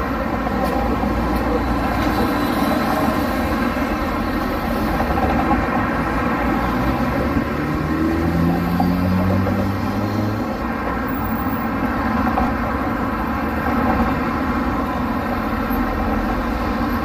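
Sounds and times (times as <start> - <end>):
cars passing: 0.0 - 17.0
vehicle engine accelerating: 6.7 - 10.4.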